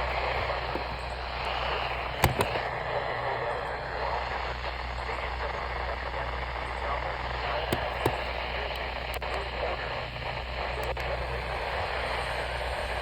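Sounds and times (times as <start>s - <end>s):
sharp clicks: 0.0s - 2.7s, 7.4s - 11.8s
radio static hiss: 0.0s - 13.0s.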